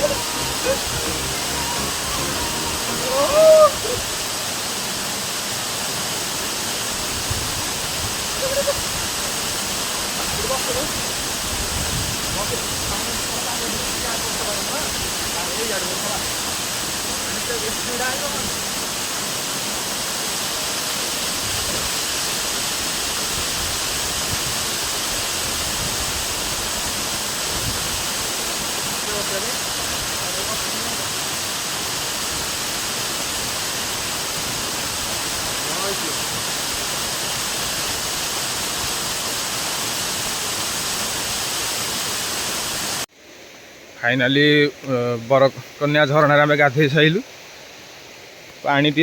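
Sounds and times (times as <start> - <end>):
short pitched call: 0.0 - 4.0
waterfall rushing: 0.0 - 43.1.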